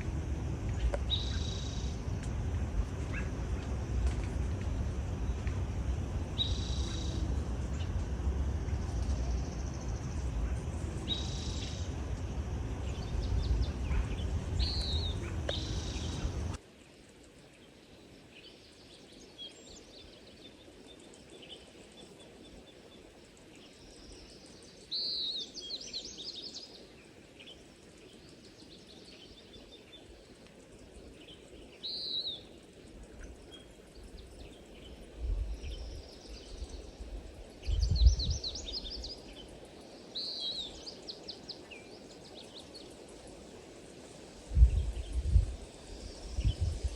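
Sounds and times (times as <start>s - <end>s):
low rumbling noise: 0.0s - 16.6s, 44.4s - 46.9s
small birds chirping: 0.0s - 16.6s, 31.2s - 43.4s.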